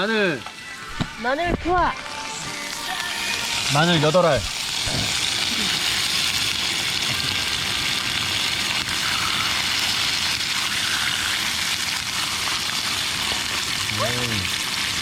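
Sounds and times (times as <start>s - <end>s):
garlic sizzling in a pan: 0.0s - 1.4s, 2.2s - 15.0s.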